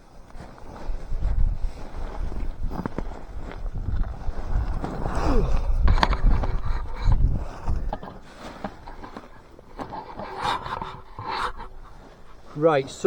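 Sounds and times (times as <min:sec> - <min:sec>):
rustling and scraping: 0:00.0 - 0:13.0
wind buffeting microphone: 0:00.0 - 0:13.0.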